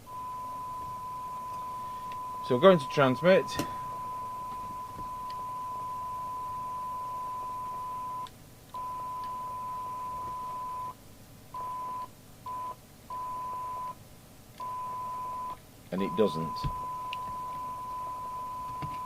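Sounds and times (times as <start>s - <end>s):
steady test tone: 0.0s - 10.9s.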